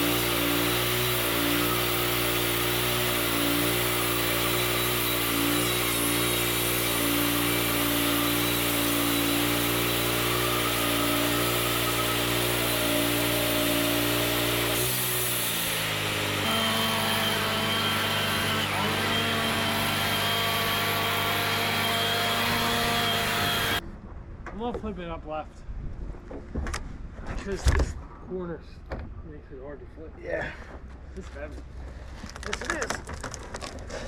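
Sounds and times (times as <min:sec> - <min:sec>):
bandsaw cutting log: 0:00.0 - 0:23.8
sawmill engine tone: 0:00.0 - 0:23.8.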